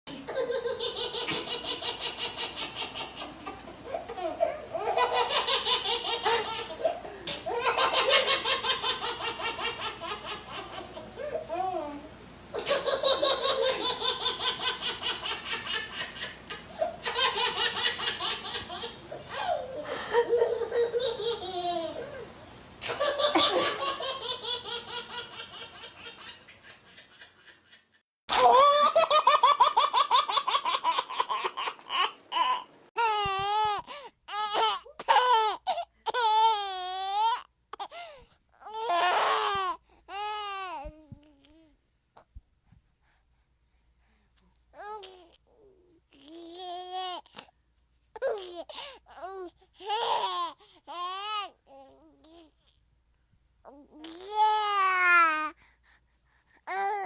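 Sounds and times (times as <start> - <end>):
young child laughing: 0.2 - 32.6.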